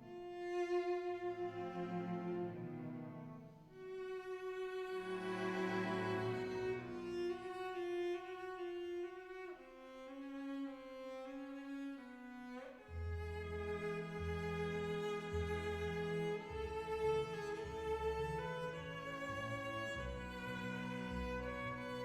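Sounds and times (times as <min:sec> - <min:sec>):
bowed strings slow held notes: 0:12.9 - 0:22.0
deep bass: 0:13.0 - 0:22.0.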